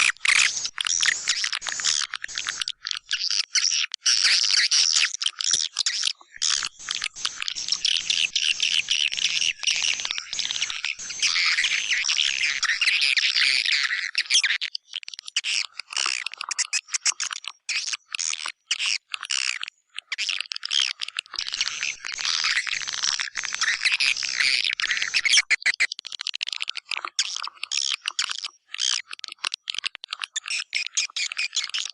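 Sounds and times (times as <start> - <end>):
swiftlets twittering and chirping: 0.0 - 5.1, 5.9 - 14.5, 21.4 - 25.6.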